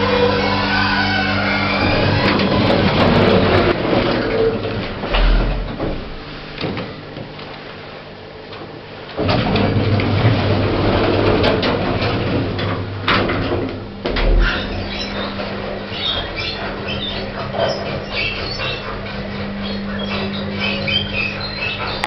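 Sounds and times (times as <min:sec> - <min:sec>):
lift door and mechanism noise: 0:00.0 - 0:07.8, 0:08.5 - 0:22.0
lift running hum: 0:00.0 - 0:22.0
faint squeaky chirping: 0:14.4 - 0:22.0.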